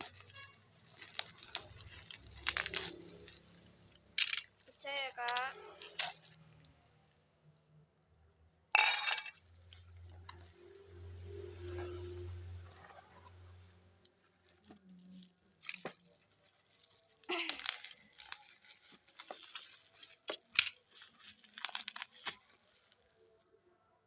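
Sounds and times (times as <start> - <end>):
packaging crunching and tearing: 0.0 - 6.8, 14.0 - 23.4.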